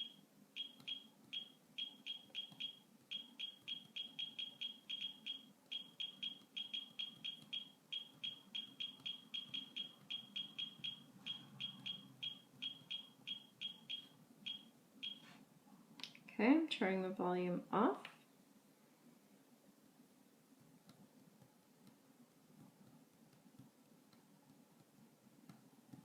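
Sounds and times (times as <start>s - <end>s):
short high keystroke beeps: 0.0s - 15.2s.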